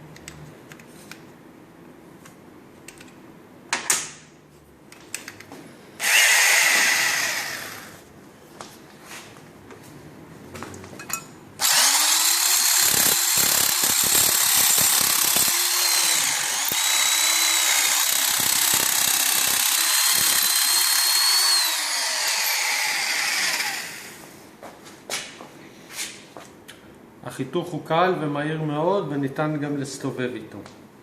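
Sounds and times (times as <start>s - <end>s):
drill nibbler cutting sheet metal: 6.0s - 8.0s, 11.6s - 24.2s.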